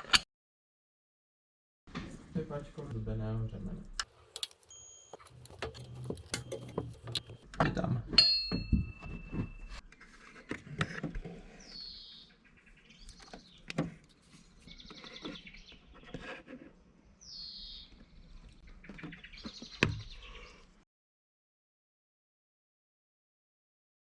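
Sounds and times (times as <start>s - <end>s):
sharp clicks and knocks: 4.0s - 7.7s
small bird singing: 11.5s - 16.1s, 17.1s - 20.6s.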